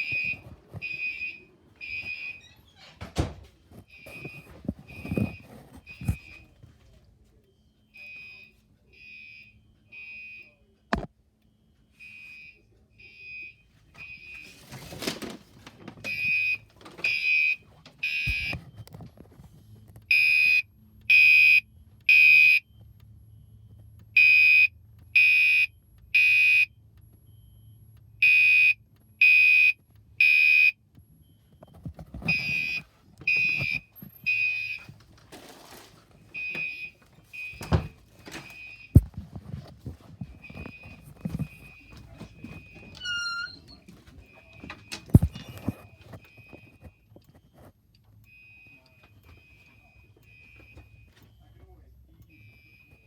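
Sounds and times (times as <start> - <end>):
fire alarm horn blasts: 20.1 - 22.6, 24.2 - 26.7, 28.2 - 30.8, 32.2 - 34.9.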